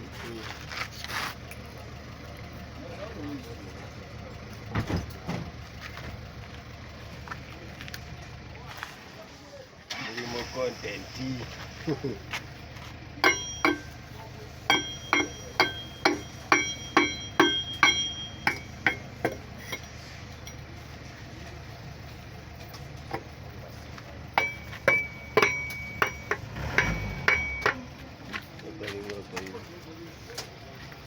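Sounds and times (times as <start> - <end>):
hammer striking metal: 13.2 - 14.0, 14.7 - 20.6, 24.4 - 27.9.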